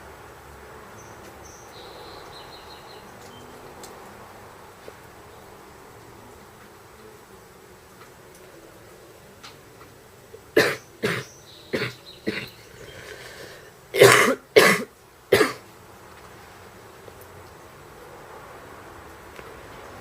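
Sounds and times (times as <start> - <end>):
woman coughing: 10.6 - 12.5, 14.0 - 15.6.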